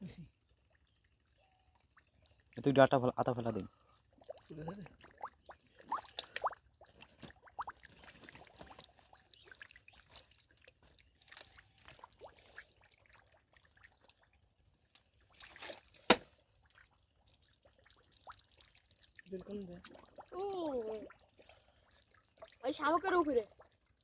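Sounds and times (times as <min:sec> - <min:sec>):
water trickling and splashing: 0:00.0 - 0:24.0.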